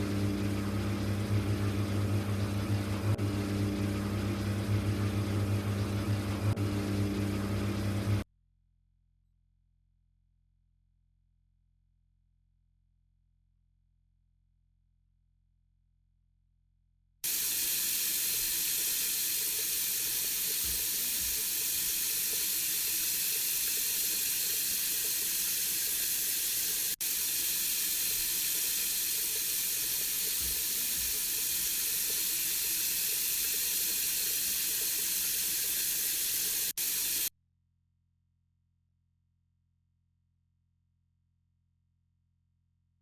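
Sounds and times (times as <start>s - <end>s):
water rushing into washing machine: 0.0s - 8.2s, 17.2s - 37.3s.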